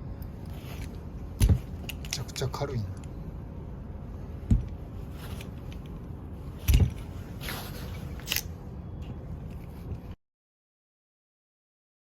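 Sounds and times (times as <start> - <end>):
heavy thump: 4.5 - 4.7.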